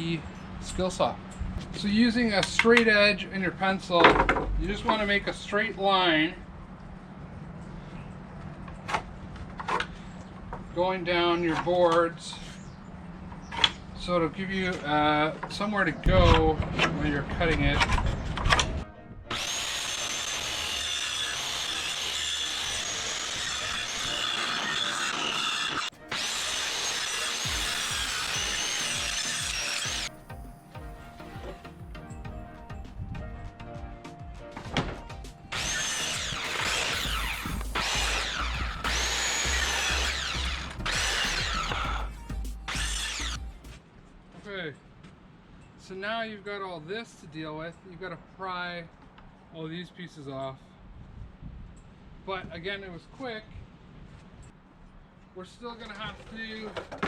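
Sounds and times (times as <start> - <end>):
circular saw cutting wood: 4.0 - 5.4, 18.6 - 32.1, 35.4 - 43.8.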